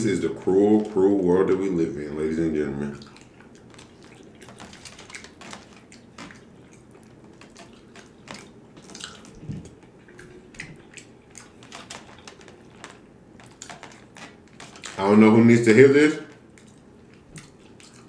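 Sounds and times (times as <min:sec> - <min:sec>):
wet chewing smacks: 0:02.9 - 0:15.0, 0:16.2 - 0:18.0.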